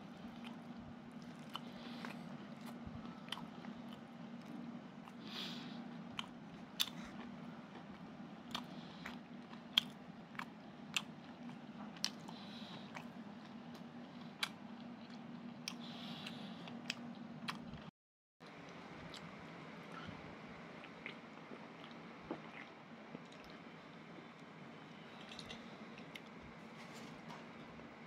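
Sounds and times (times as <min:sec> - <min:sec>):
steady low hum: 0:00.0 - 0:28.0
person chewing: 0:00.1 - 0:05.4, 0:06.1 - 0:17.9, 0:20.8 - 0:23.6.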